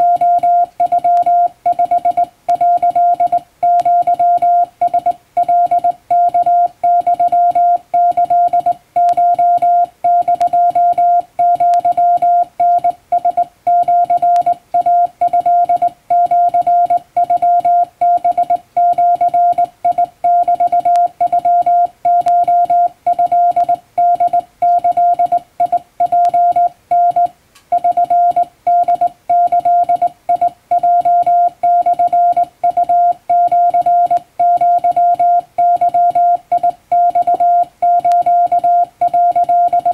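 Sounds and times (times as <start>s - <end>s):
morse code beeps: 0.0s - 39.9s.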